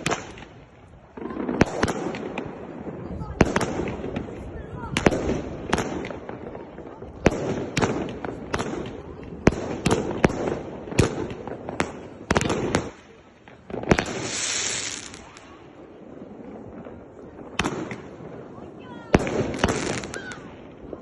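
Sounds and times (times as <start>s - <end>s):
fireworks reports: 0.0s - 21.0s
firework hissing rush: 13.9s - 15.7s.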